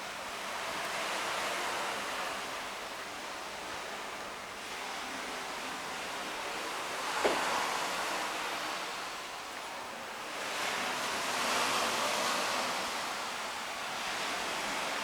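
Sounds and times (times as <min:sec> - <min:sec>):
sea waves washing onto shore: 0:00.0 - 0:15.0.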